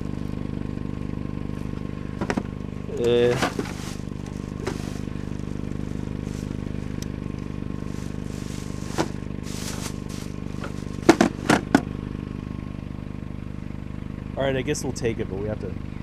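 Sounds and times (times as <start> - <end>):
vehicle engine idling: 0.0 - 16.0
rustling of handled item: 3.3 - 7.0, 7.8 - 11.8
sharp knocks: 10.6 - 11.9.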